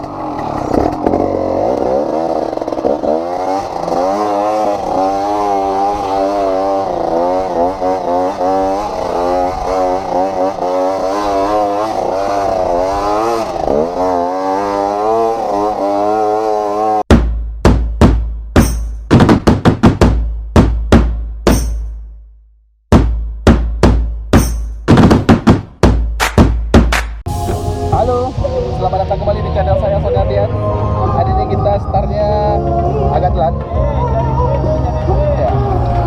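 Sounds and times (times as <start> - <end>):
dirt bike engine revving: 0.0 - 17.0
loud drum hits: 17.1 - 21.7, 22.9 - 30.4.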